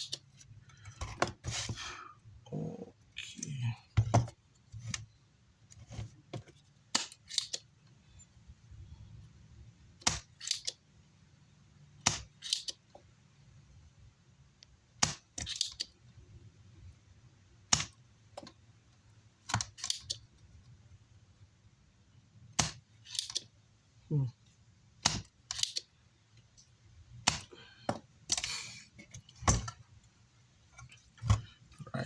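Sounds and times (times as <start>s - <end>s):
hand tool clicking and snapping: 6.9s - 7.7s, 10.0s - 10.8s, 12.0s - 12.8s, 25.0s - 25.9s, 27.2s - 27.5s, 28.3s - 28.6s.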